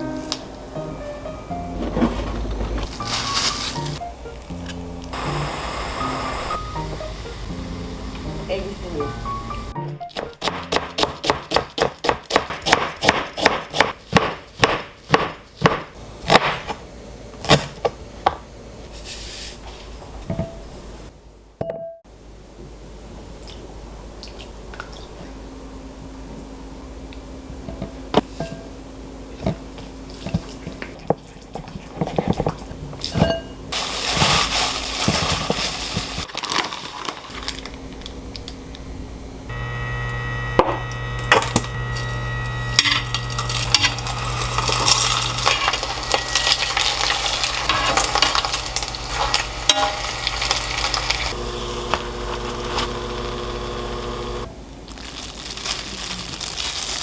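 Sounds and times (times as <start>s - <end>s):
appliance hum: 0.0s - 10.8s, 36.9s - 55.0s
food sizzling in a pan: 5.1s - 9.7s, 39.5s - 54.5s.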